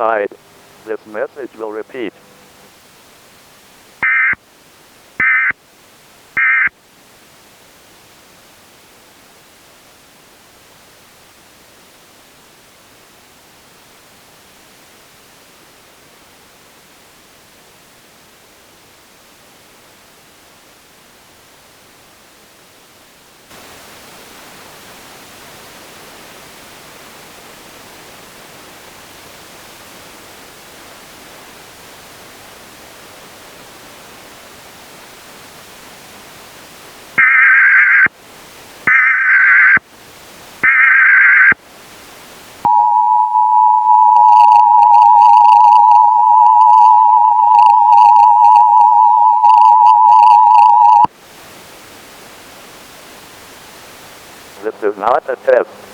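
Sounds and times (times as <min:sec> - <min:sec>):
static hiss: 0:00.0 - 0:55.9
two-tone attention signal: 0:04.0 - 0:04.4, 0:05.2 - 0:05.5, 0:06.4 - 0:06.7, 0:37.2 - 0:38.1, 0:38.9 - 0:39.8, 0:40.6 - 0:41.6, 0:42.7 - 0:51.1
warbling digital header tones: 0:04.0 - 0:04.4, 0:05.2 - 0:05.5, 0:06.4 - 0:06.7, 0:37.2 - 0:38.1, 0:40.6 - 0:41.6, 0:42.7 - 0:51.1.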